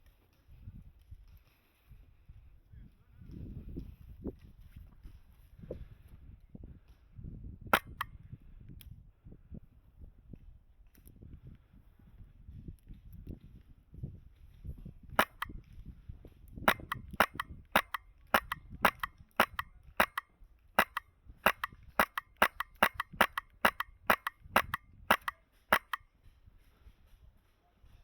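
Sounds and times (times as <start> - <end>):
airsoft rifle firing rapid shots: 7.8 - 8.1, 15.2 - 15.6, 16.7 - 26.1.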